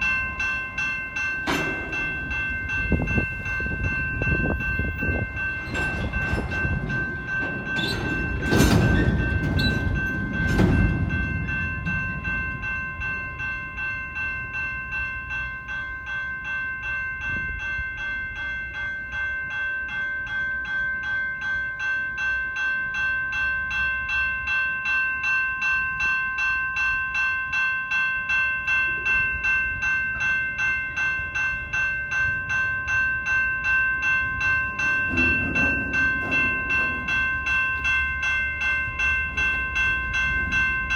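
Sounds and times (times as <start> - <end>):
pulsing high ringing: 0.0 - 40.9
train passing: 0.0 - 40.9
loud metal clanks: 1.4 - 3.2, 5.6 - 12.5, 34.6 - 40.9.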